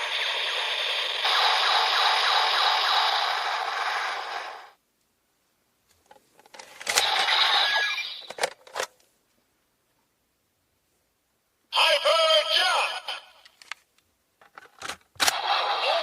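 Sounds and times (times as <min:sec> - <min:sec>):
toy electronic sound effects: 0:07.0 - 0:08.4.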